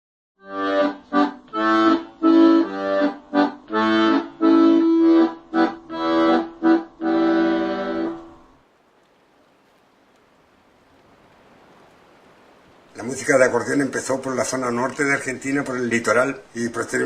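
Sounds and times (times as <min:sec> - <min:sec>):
accordion chords: 0:00.4 - 0:08.6.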